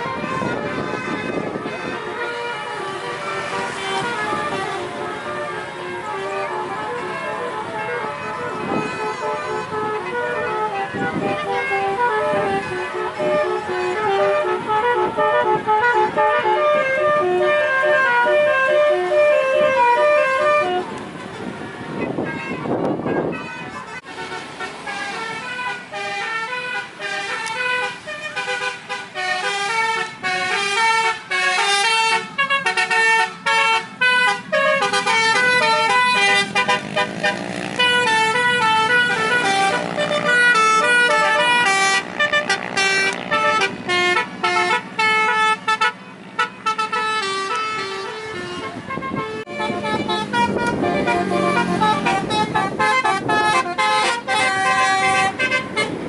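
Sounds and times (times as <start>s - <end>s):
horns playing fast melodies: 0.0s - 56.0s.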